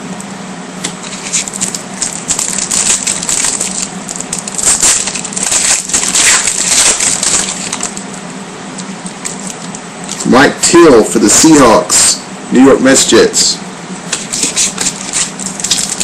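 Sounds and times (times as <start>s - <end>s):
foil wrapper tearing and crinkling: 0.9s - 8.1s, 14.1s - 16.0s.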